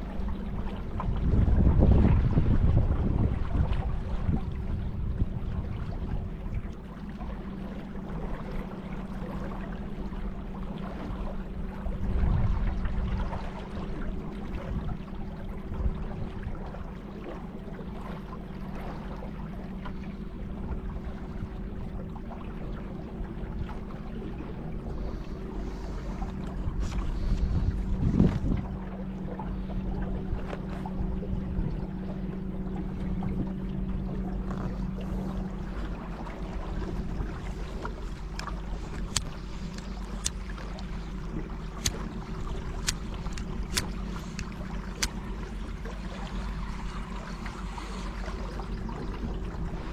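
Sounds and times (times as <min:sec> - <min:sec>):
boat engine hum: 0:00.0 - 0:49.9
wind noise on microphone: 0:00.8 - 0:06.7, 0:12.0 - 0:13.2, 0:25.9 - 0:28.9
rushing water: 0:20.7 - 0:49.9.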